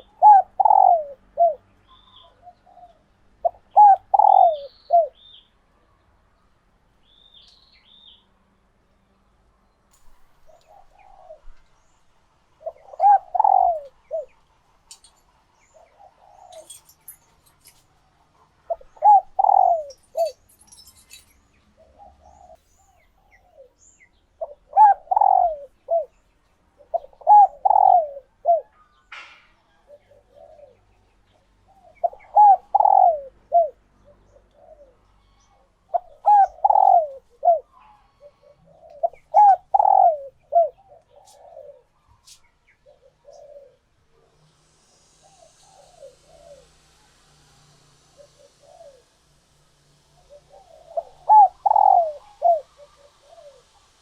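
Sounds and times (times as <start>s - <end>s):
doves cooing: 0.0s - 5.2s, 10.4s - 11.7s, 12.6s - 17.8s, 18.6s - 22.6s, 24.4s - 26.1s, 26.8s - 28.7s, 29.7s - 42.1s, 42.8s - 43.9s, 45.1s - 46.9s, 48.0s - 49.3s, 50.2s - 54.0s.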